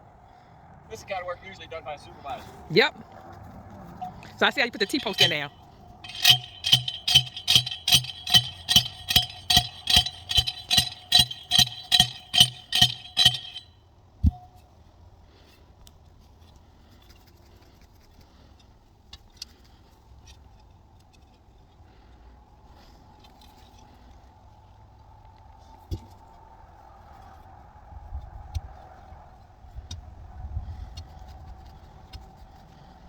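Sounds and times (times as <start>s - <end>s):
metal post clanging: 4.0s - 13.7s.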